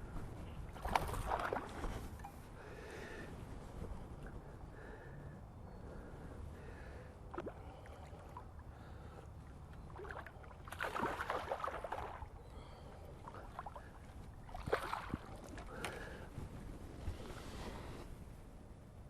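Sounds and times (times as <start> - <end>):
water splashing around boat: 0.7 - 2.2, 7.3 - 16.2.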